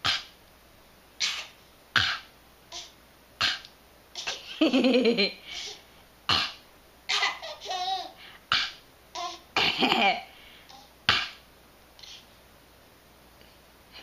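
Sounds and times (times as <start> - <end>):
parrot mimicking coughs: 1.2 - 3.6.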